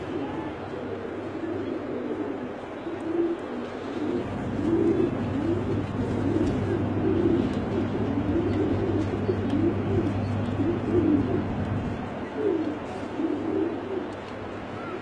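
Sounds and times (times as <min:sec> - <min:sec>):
pigeons cooing: 0:00.0 - 0:15.0.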